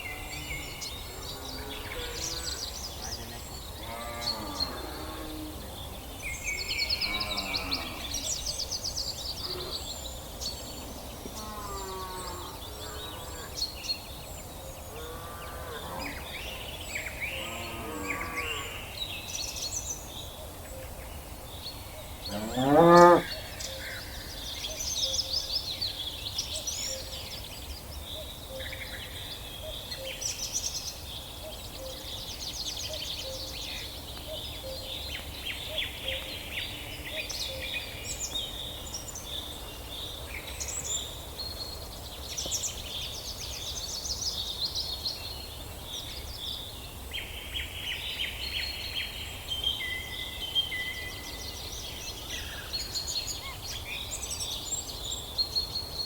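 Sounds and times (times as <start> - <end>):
birds chirping and singing: 0.0 - 19.3, 22.1 - 25.6.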